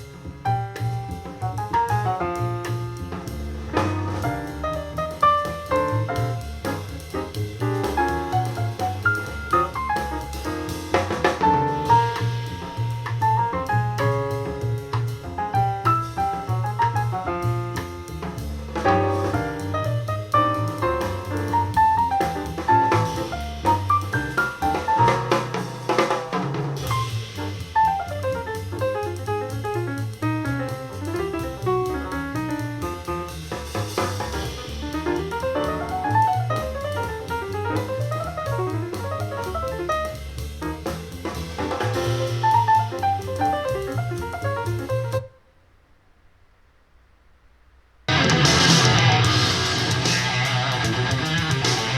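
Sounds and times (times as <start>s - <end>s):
instrumental jazz through speaker: 0.0s - 45.7s, 48.1s - 51.9s
instrumental music through speaker: 48.1s - 51.9s.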